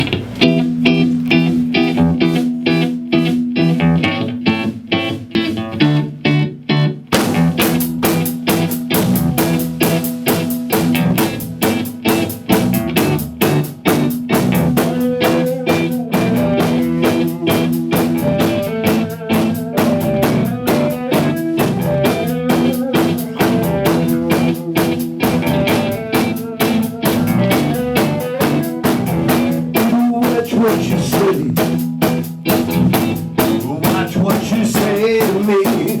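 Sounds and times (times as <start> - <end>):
band playing with drum kit: 0.0 - 36.0
guitar playing: 0.0 - 36.0.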